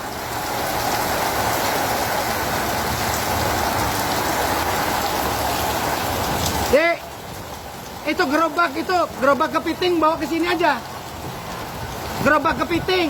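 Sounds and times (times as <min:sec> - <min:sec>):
strong wind: 0:00.0 - 0:08.0
heavy rain pouring: 0:00.0 - 0:13.0.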